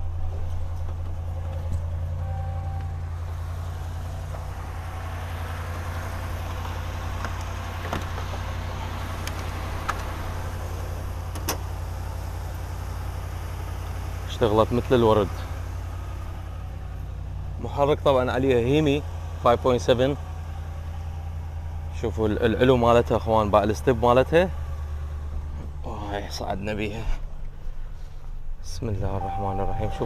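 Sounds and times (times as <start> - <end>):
car engine idling: 0.0 - 30.0
short beep: 2.2 - 3.0, 29.2 - 30.0.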